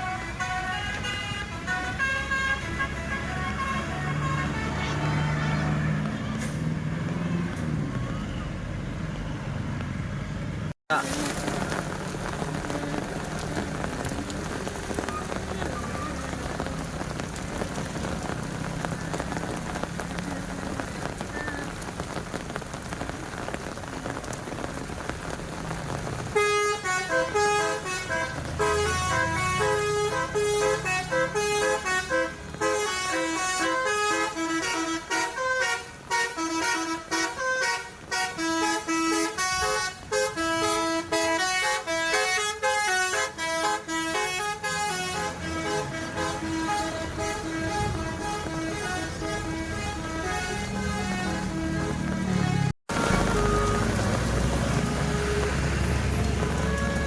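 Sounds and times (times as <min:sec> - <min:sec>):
bus air horn melody: 0:00.0 - 0:06.6, 0:26.4 - 0:54.1.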